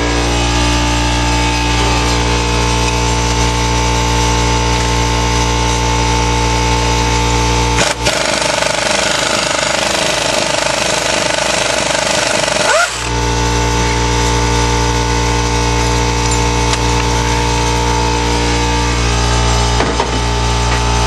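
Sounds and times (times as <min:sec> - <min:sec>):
steady machine hum: 0:00.0 - 0:21.0
impact wrench hammering: 0:07.8 - 0:13.1.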